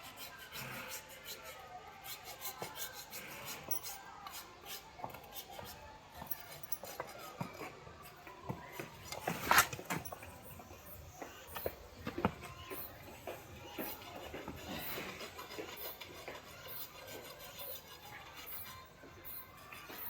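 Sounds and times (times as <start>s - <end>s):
blade scraping hoof: 8.8s - 20.0s.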